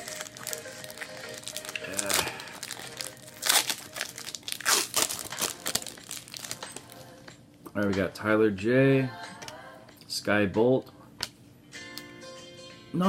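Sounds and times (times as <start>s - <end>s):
wrapper crinkling and tearing: 0.0s - 7.0s.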